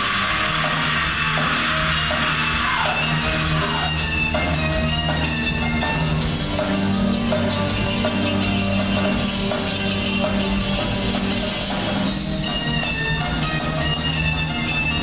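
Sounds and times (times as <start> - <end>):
drum kit: 0.0 - 15.0
electric guitar: 0.0 - 15.0.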